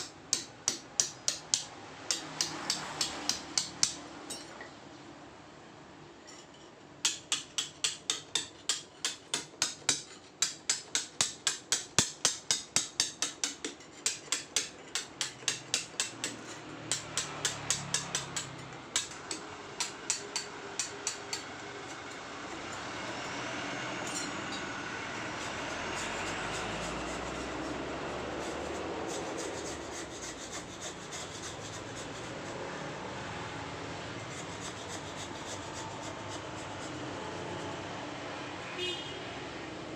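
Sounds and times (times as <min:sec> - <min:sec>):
hammer striking chisel into stone: 0:00.0 - 0:04.5, 0:07.0 - 0:21.5
scraping stone surface: 0:07.5 - 0:32.6, 0:34.2 - 0:37.0.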